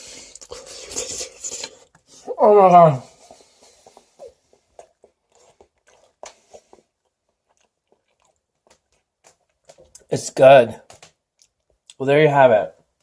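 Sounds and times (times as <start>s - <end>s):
faint chewing mouth clicks: 3.3s - 10.1s, 11.3s - 12.0s.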